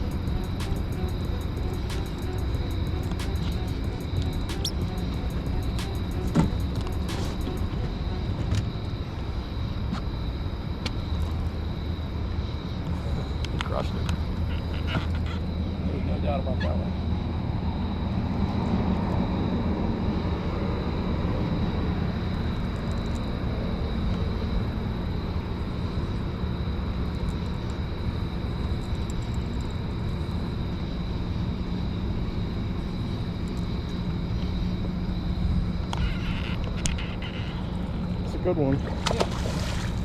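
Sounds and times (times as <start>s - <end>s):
low engine drone: 0.0s - 40.0s
thin high whine: 0.0s - 40.0s.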